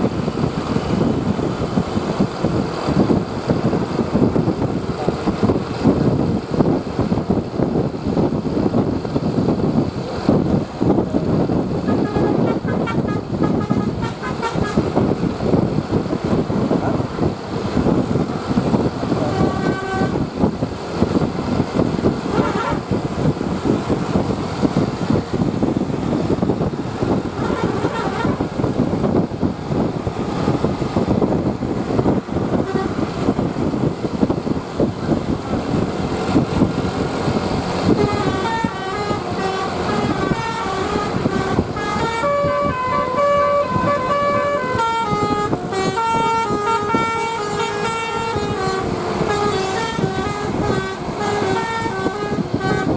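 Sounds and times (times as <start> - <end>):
vehicle noise: 0.0 - 52.9
bus melody horn playing a tune: 11.3 - 15.6, 18.0 - 20.6, 21.8 - 23.4, 25.6 - 31.4, 32.0 - 52.9
short horn toots: 11.8 - 14.9, 22.3 - 22.8, 27.4 - 28.5, 37.9 - 52.9.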